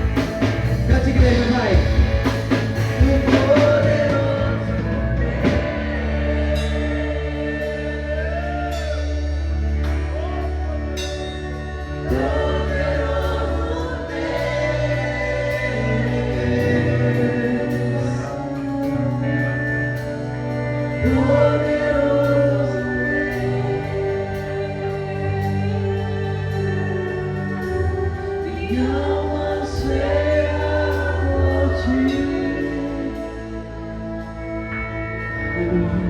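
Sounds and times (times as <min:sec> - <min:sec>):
band playing slow gospel song: 0:00.0 - 0:36.0
singers holding long notes: 0:00.0 - 0:36.0.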